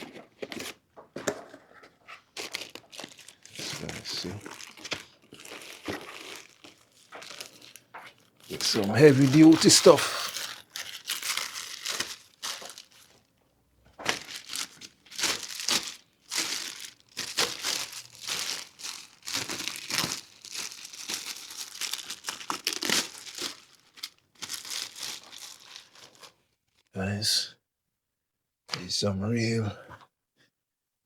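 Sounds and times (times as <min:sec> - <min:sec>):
packing material crumpled and torn: 0:02.3 - 0:13.2, 0:14.0 - 0:26.4.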